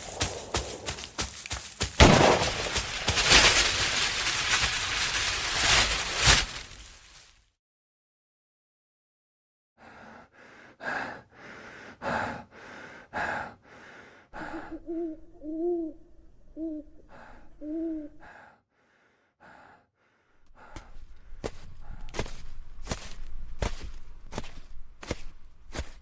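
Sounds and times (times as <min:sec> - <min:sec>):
person breathing hard: 0:09.8 - 0:24.5
owl hooting: 0:14.4 - 0:18.2.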